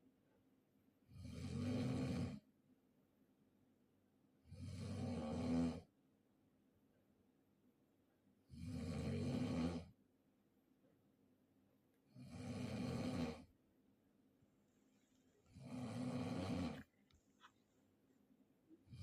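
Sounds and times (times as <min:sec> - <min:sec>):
person snoring: 0:01.1 - 0:02.4, 0:04.5 - 0:05.9, 0:08.5 - 0:09.9, 0:12.1 - 0:13.5, 0:15.5 - 0:16.9.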